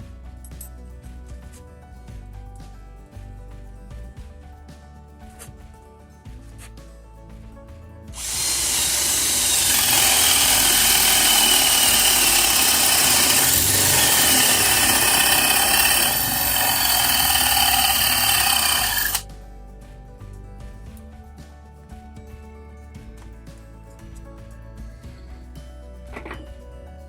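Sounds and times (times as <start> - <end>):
cordless drill whining: 8.2 - 19.2.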